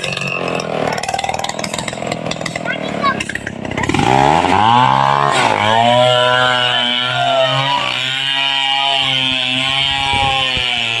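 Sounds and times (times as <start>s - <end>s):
chainsaw engine running: 0.0s - 11.0s.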